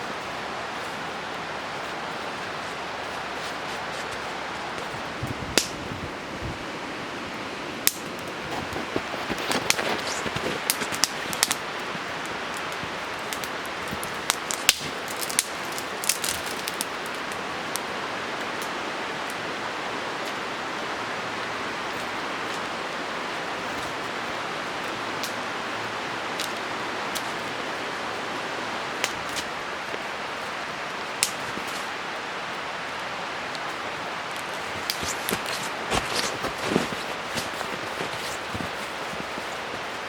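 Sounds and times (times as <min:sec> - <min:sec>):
fast-flowing river rushing: 0:00.0 - 0:40.0
sharp clicks and snaps: 0:12.5 - 0:17.4.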